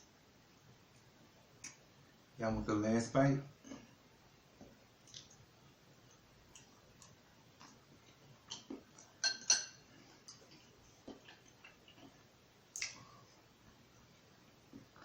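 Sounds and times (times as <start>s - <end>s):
utensil clinking against dish: 9.2s - 9.8s.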